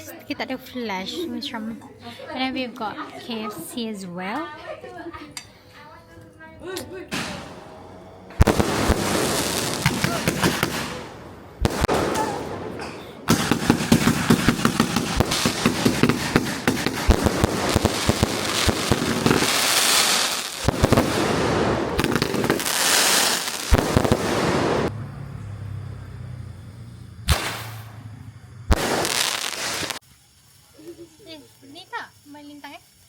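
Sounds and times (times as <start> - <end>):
fireworks crackling pops: 6.8 - 24.9, 27.2 - 33.0
loud firework bursts: 7.1 - 33.0.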